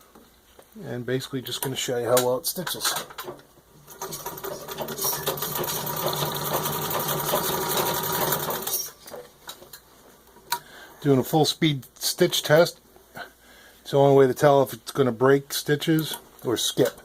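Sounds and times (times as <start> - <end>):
sewing machine stitching: 3.9 - 9.0.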